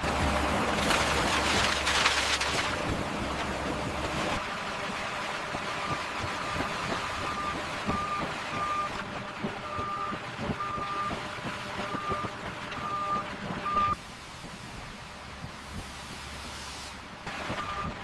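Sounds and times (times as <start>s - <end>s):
diesel machinery running: 0.0s - 18.0s
reversing alarm beeping: 5.8s - 9.0s, 9.6s - 11.2s, 11.8s - 14.0s, 17.6s - 18.0s.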